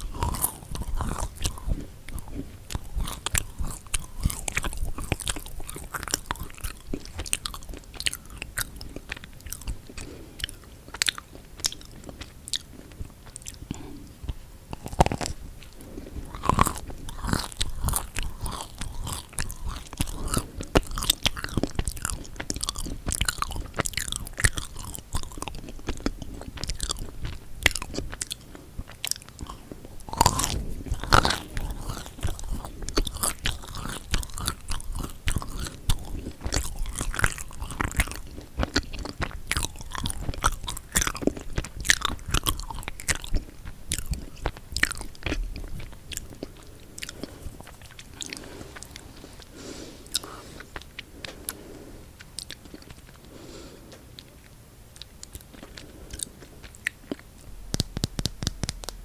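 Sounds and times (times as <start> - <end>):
wet chewing sounds: 0.0 - 59.0
chocolate shell crackling: 14.7 - 28.4, 29.2 - 49.1, 56.4 - 59.0.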